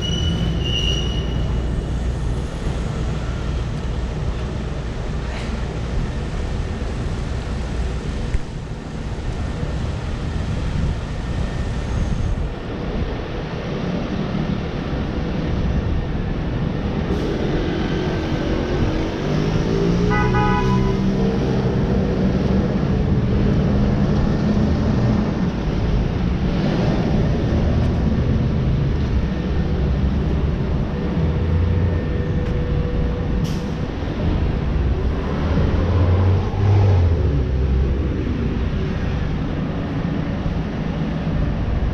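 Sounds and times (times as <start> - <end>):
vehicles passing: 0.0 - 41.9
car horn toot: 20.1 - 21.0.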